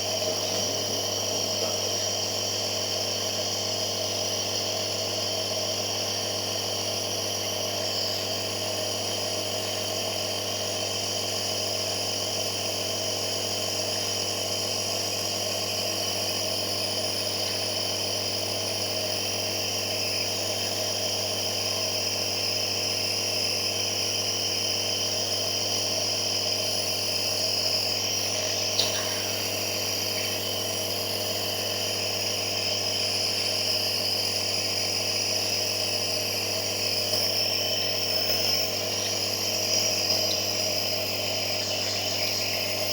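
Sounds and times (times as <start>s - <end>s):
compressor nebulizer humming: 0.0s - 42.9s.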